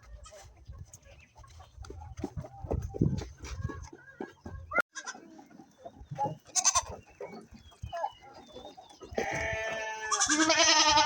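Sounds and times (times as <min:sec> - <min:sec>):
goat bleating: 0:06.5 - 0:07.0, 0:09.2 - 0:11.0.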